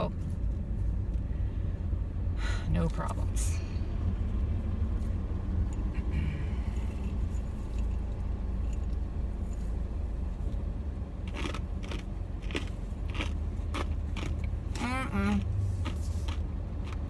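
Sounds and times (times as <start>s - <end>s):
low rumble inside car: 0.0s - 17.0s
crunching nuts: 11.2s - 14.5s, 15.4s - 17.0s.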